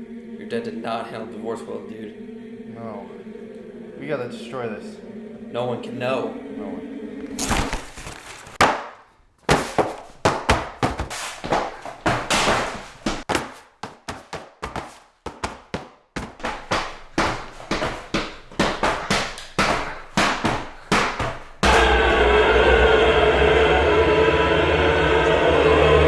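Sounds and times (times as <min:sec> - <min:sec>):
hard sharp smashing blows: 0:07.4 - 0:22.2.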